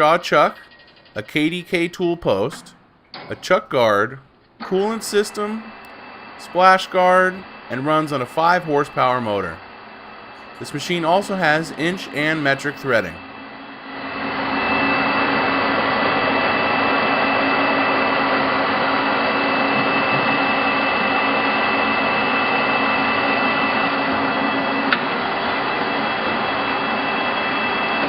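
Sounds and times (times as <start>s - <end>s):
lathe running: 0.0s - 28.0s.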